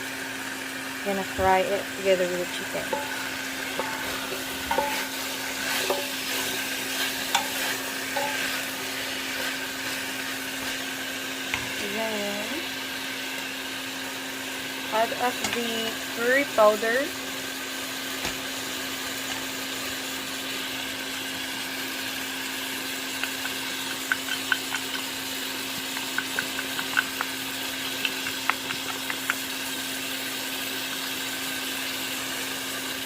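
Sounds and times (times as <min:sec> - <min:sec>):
food frying in a pan: 0:00.0 - 0:33.0
constant hum: 0:00.9 - 0:17.3
utensil tapping against pan: 0:02.8 - 0:06.4, 0:07.3 - 0:08.6, 0:23.1 - 0:25.1, 0:25.8 - 0:29.5.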